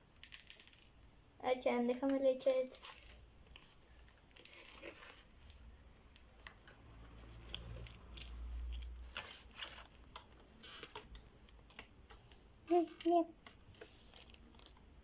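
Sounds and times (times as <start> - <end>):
slime clicking and crackling: 7.4 - 15.0.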